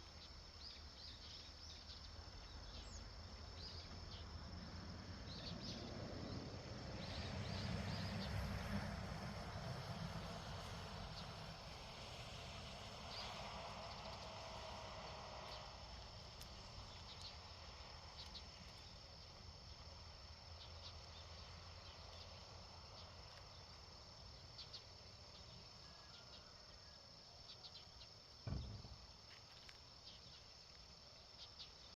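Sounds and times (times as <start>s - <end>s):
insects chirring: 0.0s - 32.0s
low thump: 28.4s - 29.2s.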